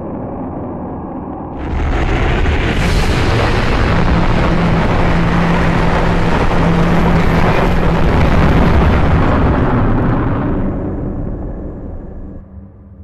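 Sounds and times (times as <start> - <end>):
low steady hum: 0.0 - 13.0
loud rush of dense noise: 1.5 - 12.5.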